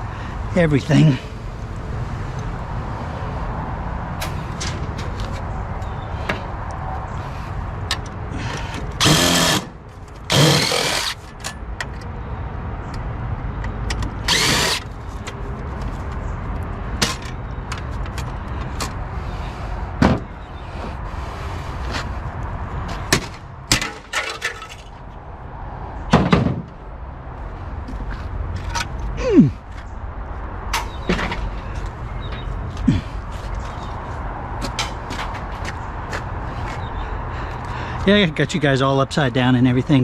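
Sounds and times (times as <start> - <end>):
cordless drill spinning: 9.0 - 9.7, 10.3 - 11.2, 14.3 - 14.9.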